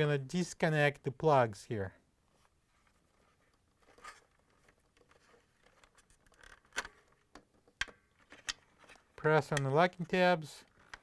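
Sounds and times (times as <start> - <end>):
soft plastic rustle: 2.2 - 7.3.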